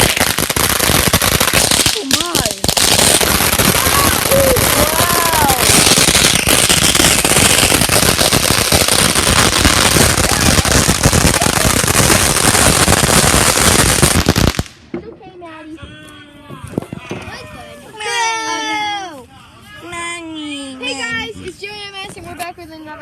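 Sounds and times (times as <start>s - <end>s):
fireworks crackling and banging: 0.0s - 15.4s.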